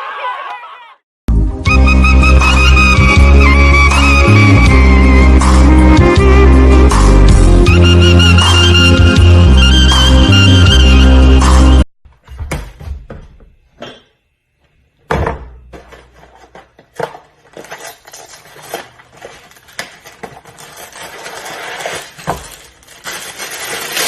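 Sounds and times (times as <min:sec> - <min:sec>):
dishes and utensils clattering: 0:13.8 - 0:14.2.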